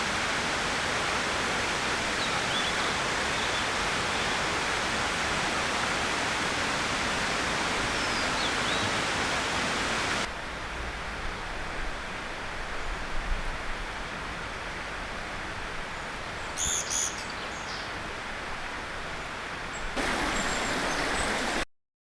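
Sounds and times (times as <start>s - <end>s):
mountain stream rushing: 0.0s - 16.4s, 17.9s - 21.7s
small bird calling: 19.8s - 21.6s.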